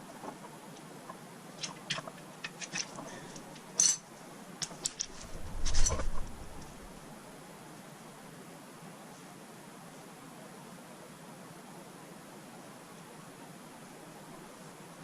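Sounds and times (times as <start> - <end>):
tools and parts clicking: 1.6 - 6.7.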